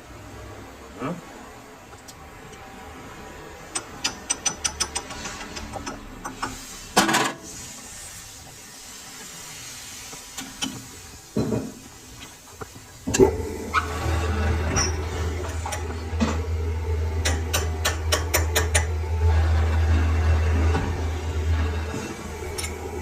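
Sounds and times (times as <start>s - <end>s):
metal knocks with scrape: 3.8s - 7.5s.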